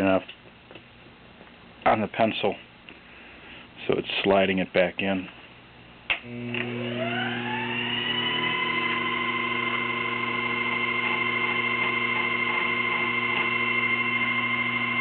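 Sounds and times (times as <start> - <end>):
lathe motor whine: 6.2 - 15.0.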